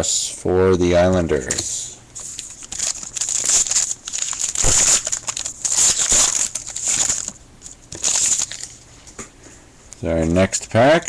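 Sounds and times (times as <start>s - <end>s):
wrapper tearing and crinkling: 2.2s - 8.9s.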